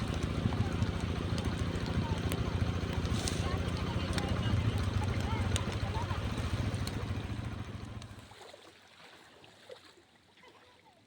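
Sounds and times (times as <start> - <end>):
low rumbling wind: 0.0 - 8.2.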